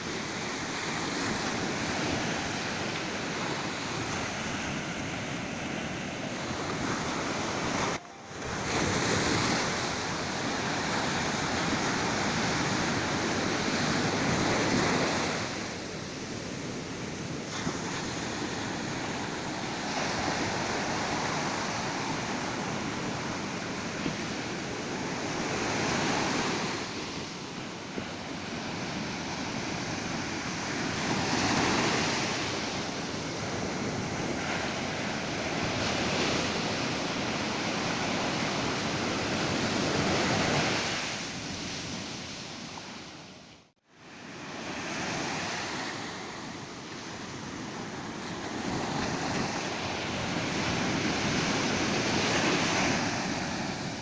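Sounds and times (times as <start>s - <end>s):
ocean surf breaking on beach: 0.0s - 54.0s.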